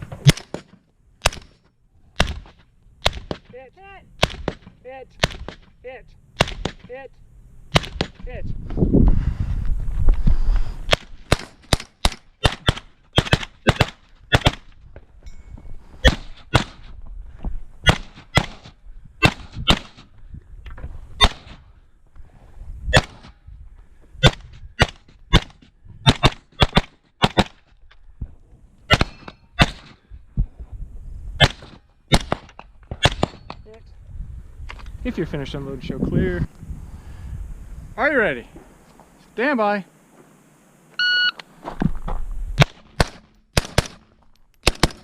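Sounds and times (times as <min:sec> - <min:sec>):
suppressed rifle firing rapidly: 0:42.6 - 0:45.0.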